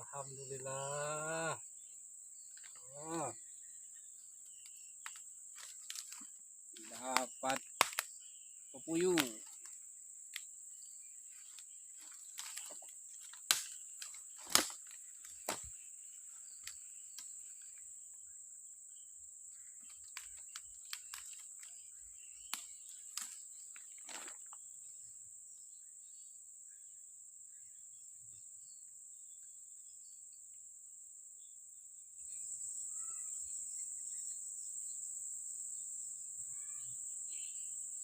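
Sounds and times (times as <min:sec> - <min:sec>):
crickets trilling: 0:00.0 - 0:38.0.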